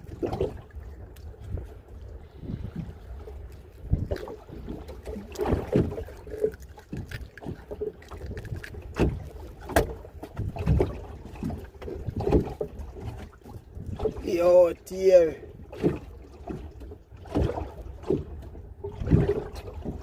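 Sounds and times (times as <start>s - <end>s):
wind rumbling on microphone: 0.0s - 14.4s, 15.3s - 20.0s
knocks and thuds on boat: 8.9s - 14.2s, 15.5s - 20.0s.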